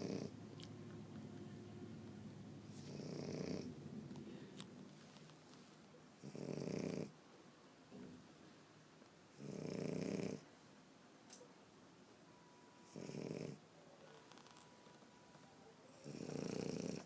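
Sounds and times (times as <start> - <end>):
dog snoring: 0.0 - 0.3, 2.7 - 3.8, 6.2 - 7.1, 9.3 - 10.4, 12.8 - 13.6, 15.9 - 17.0.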